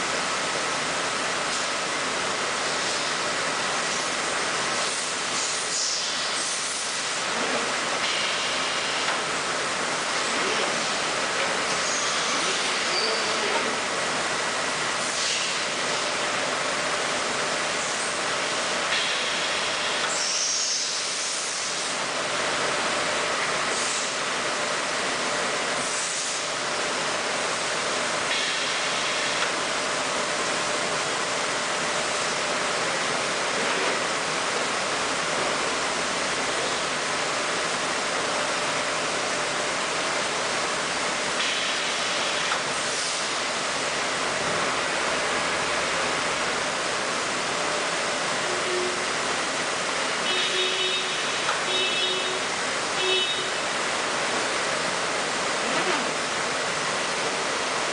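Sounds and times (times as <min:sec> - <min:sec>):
machine shop hiss: 0:02.6 - 0:09.1, 0:10.0 - 0:16.2, 0:17.6 - 0:22.1, 0:23.6 - 0:24.3, 0:25.8 - 0:26.6, 0:28.2 - 0:29.4, 0:41.1 - 0:46.8.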